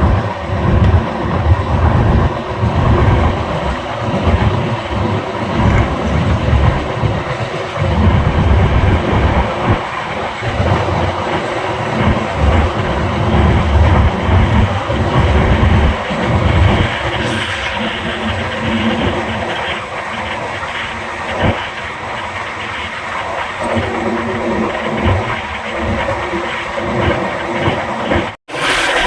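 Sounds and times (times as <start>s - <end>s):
train rumbling: 0.0s - 29.0s
wheels clattering on track: 0.0s - 29.0s.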